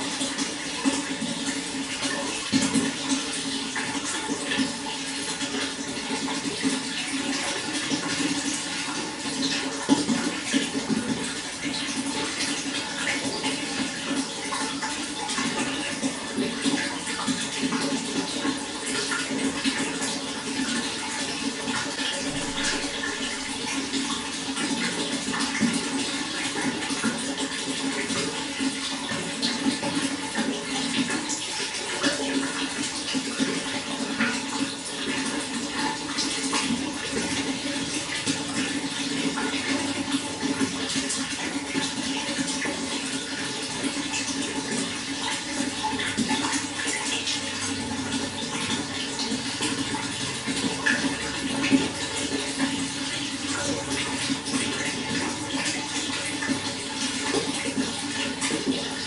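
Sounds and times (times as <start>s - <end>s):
running water: 0.0s - 59.0s.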